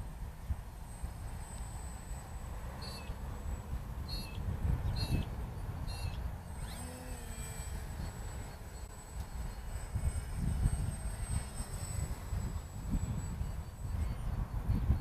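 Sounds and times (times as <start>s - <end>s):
bird chirping: 2.7s - 3.3s, 4.1s - 6.2s
wind buffeting microphone: 2.8s - 15.0s.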